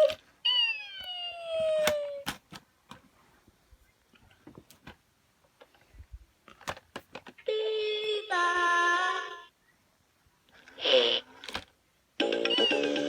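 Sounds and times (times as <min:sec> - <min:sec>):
electronic toy synthetic notes: 0:12.2 - 0:13.0.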